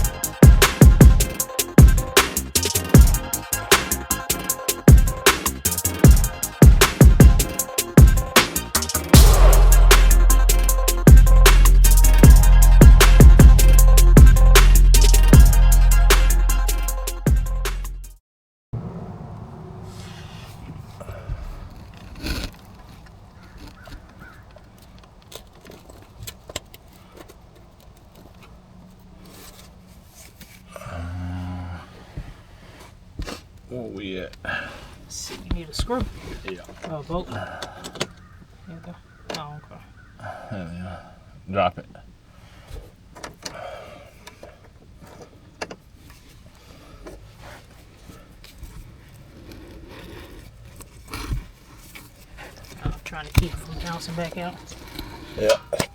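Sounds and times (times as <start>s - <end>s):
loud low-pitched hum: 9.1s - 14.4s
metal tools clinking: 55.4s - 55.9s.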